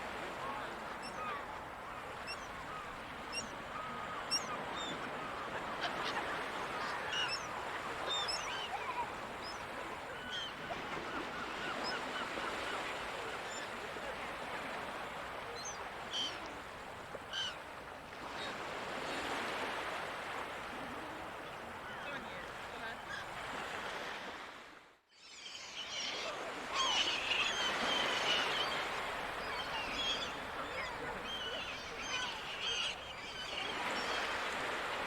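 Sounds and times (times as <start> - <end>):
ocean surf: 0.0 - 24.8, 25.7 - 35.0
gulls calling: 0.1 - 13.8, 25.2 - 35.0.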